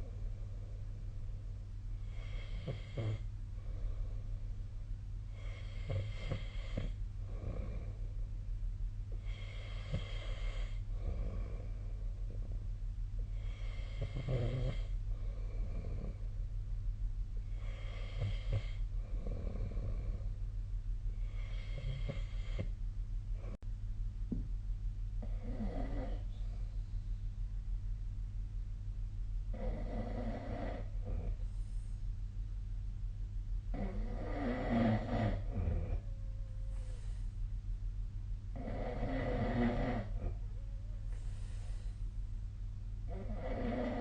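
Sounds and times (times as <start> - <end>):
quiet breaths: 0.0 - 23.7, 24.3 - 44.0
steady low hum: 0.0 - 44.0
person snoring: 2.0 - 4.2, 5.4 - 8.1, 9.2 - 12.4, 13.3 - 16.3, 33.7 - 36.1, 38.5 - 40.4, 43.1 - 44.0.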